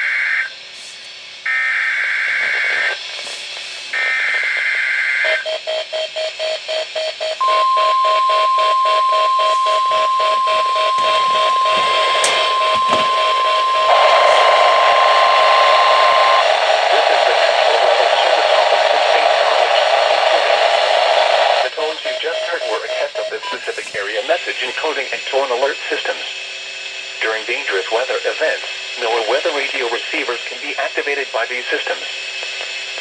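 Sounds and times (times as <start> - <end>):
hiss: 0.6 - 1.4, 3.1 - 4.6
rapid pulsing beeps: 5.2 - 16.4, 22.0 - 23.6
steady alert tone: 7.4 - 15.0.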